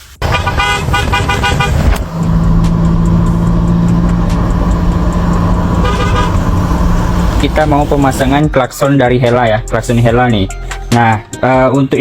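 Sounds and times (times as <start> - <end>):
car horn short blasts: 0.2 - 2.0, 5.6 - 6.8.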